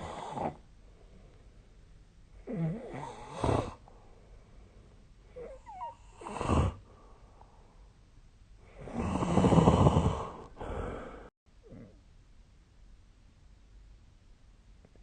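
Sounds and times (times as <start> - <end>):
person snoring: 0.0 - 0.6, 2.4 - 3.8, 5.4 - 6.8, 8.7 - 12.0.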